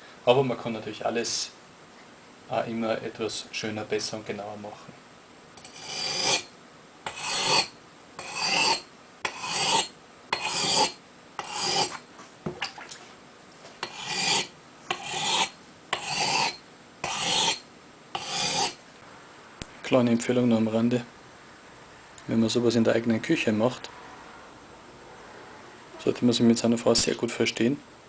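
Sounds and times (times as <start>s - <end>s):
axe grinding on whetstone: 5.6s - 6.5s, 7.1s - 12.0s, 13.8s - 17.6s, 18.2s - 18.8s.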